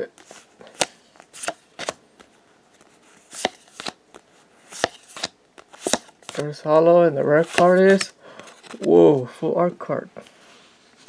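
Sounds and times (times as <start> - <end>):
trading cards snapping: 3.3 - 4.0, 4.8 - 6.4, 7.4 - 8.1.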